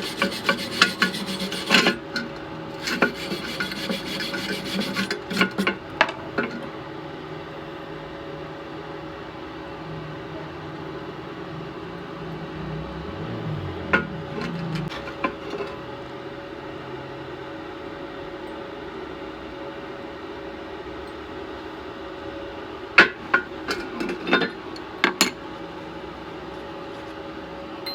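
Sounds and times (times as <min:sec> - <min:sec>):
steady hum: 0:00.0 - 0:02.1, 0:02.7 - 0:05.7.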